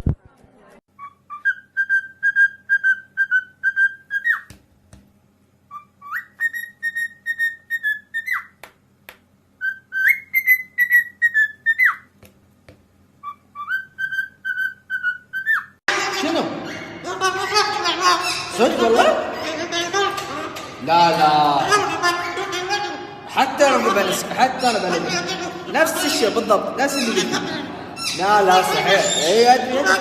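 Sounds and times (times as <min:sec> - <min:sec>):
parrot whistling calls: 0:00.9 - 0:04.5, 0:05.7 - 0:08.6, 0:09.6 - 0:12.1, 0:13.2 - 0:20.6, 0:21.6 - 0:30.0.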